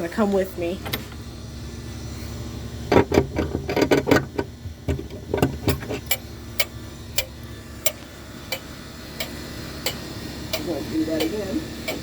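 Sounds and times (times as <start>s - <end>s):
crossing signal knocks and clicks: 2.9s - 12.0s.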